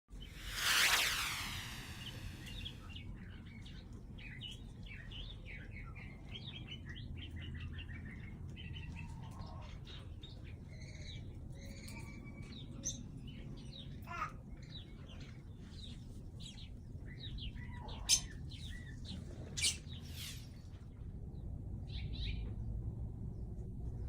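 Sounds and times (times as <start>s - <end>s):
low rumble: 0.3s - 2.8s.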